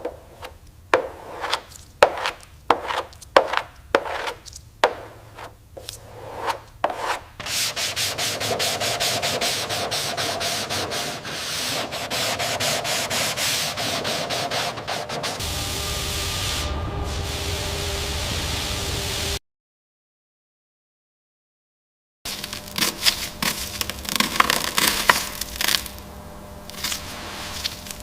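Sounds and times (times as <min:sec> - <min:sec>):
hand sanding strokes: 0:00.2 - 0:15.5, 0:26.8 - 0:28.0.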